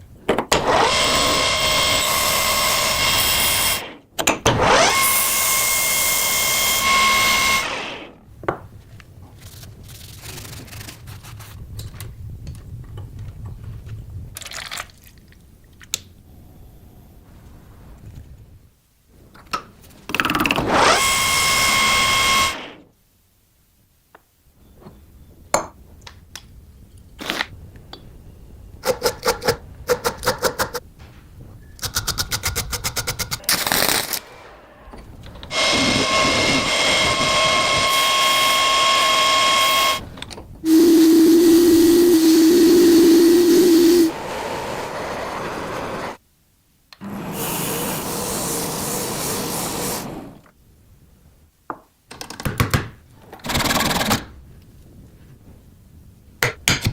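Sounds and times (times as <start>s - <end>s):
power tool running: 0.6s - 8.2s, 20.6s - 22.8s, 35.5s - 40.1s, 40.7s - 46.2s
low motor hum: 40.6s - 46.2s.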